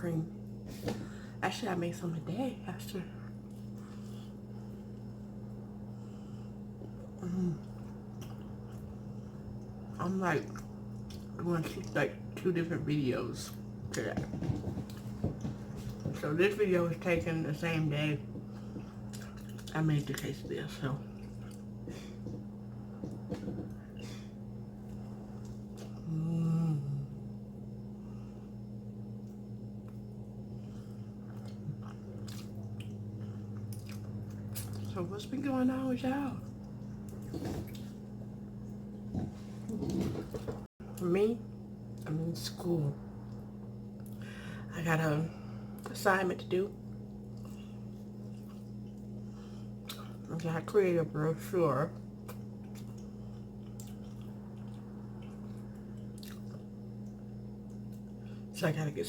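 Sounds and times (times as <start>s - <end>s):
steady low hum: 0.0s - 59.0s
close-up chewing: 6.8s - 9.8s, 18.4s - 24.1s, 29.2s - 35.0s, 36.4s - 40.7s, 46.9s - 50.3s, 52.0s - 58.3s.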